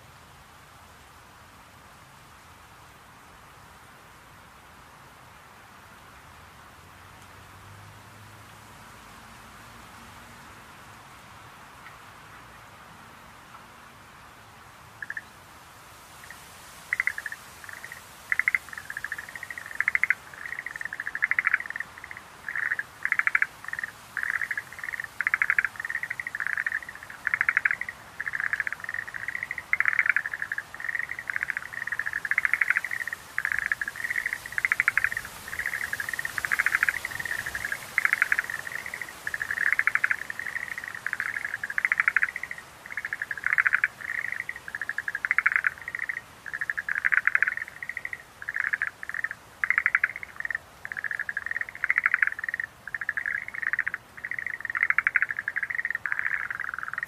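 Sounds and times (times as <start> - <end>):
tree frogs calling: 11.8 - 12.7, 14.7 - 15.5, 16.1 - 57.0.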